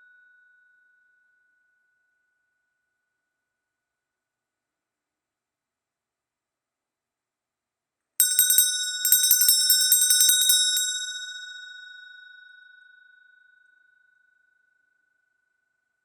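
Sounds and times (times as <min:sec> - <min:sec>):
brass handbell ringing: 0:08.2 - 0:12.0.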